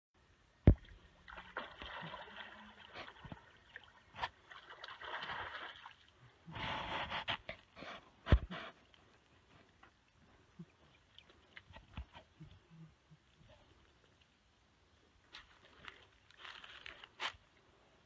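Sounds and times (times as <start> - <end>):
water splashing: 0.7 - 7.8.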